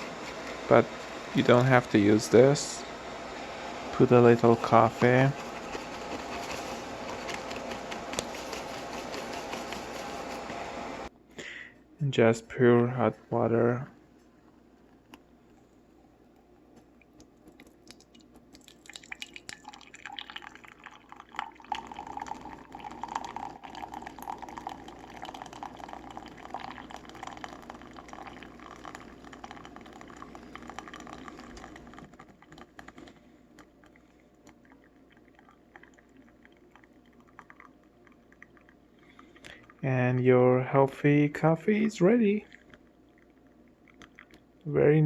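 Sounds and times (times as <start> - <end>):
water pouring onto coffee grounds: 4.0 - 10.4, 17.9 - 33.0
faint dripping: 17.0 - 40.4.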